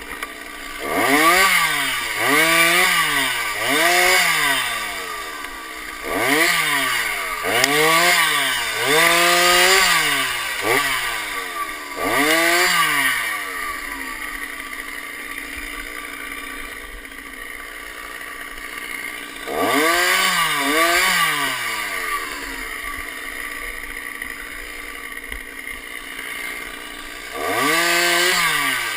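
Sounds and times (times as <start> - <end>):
chainsaw engine revving: 0.0 - 28.9.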